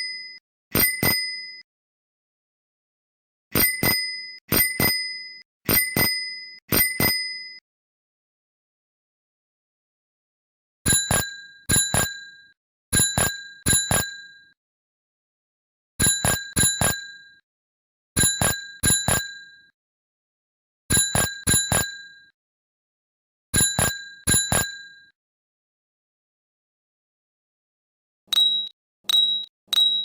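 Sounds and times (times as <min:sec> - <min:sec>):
bicycle bell ringing: 0:28.3 - 0:30.0.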